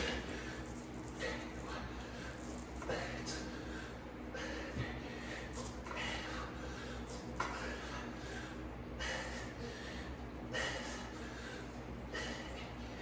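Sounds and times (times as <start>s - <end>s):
man breathing hard: 0.0s - 13.0s
steady low hum: 0.0s - 13.0s.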